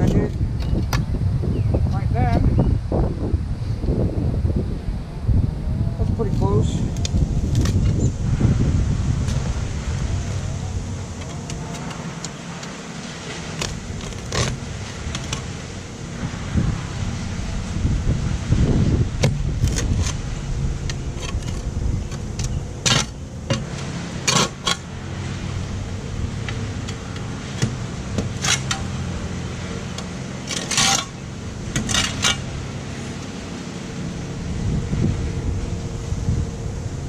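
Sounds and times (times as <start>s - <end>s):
steady low hum: 0.0s - 37.0s
spade blade striking pavement: 22.4s - 24.9s, 27.5s - 29.0s, 30.4s - 32.5s.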